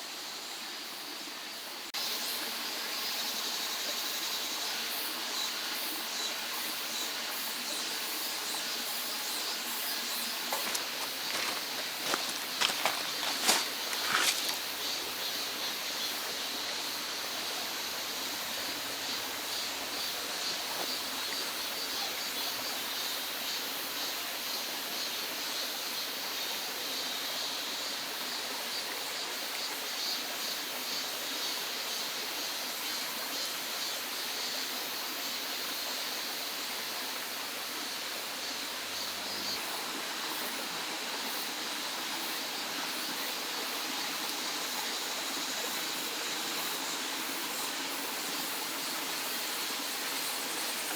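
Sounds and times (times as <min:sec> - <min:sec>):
stream water rushing: 0:09.4 - 0:22.6.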